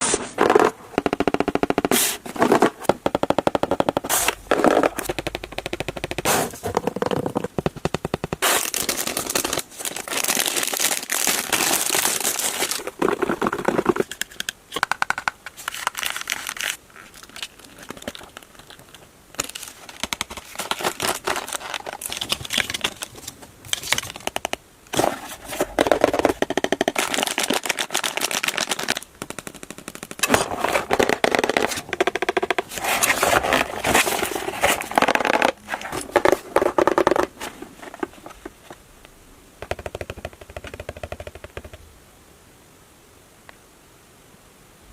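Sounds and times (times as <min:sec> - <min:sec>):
plastic wrap crackling: 0:02.4 - 0:14.8, 0:15.5 - 0:38.7
packaging tearing: 0:08.4 - 0:14.5, 0:15.6 - 0:23.1, 0:25.0 - 0:37.3.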